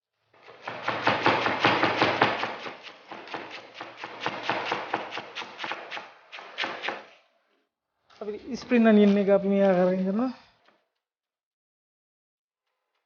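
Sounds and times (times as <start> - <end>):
knife chopping cabbage on board: 0.4 - 7.1.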